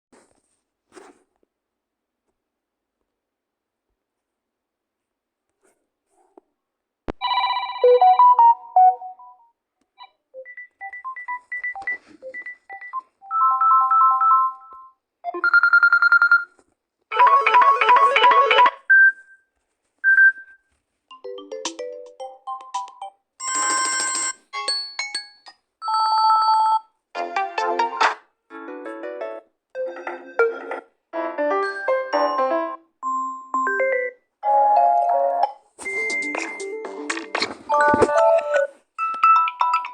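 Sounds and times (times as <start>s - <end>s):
ringtone melodies: 7.2s - 9.4s, 17.1s - 18.8s, 21.1s - 28.0s, 28.6s - 37.1s, 37.7s - 39.9s.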